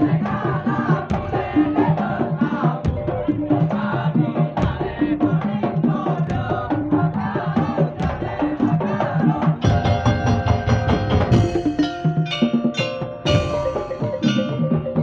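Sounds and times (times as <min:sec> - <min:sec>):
drums: 0:00.0 - 0:15.0
wooden percussion: 0:00.0 - 0:15.0
pitched struck notes: 0:09.6 - 0:15.0.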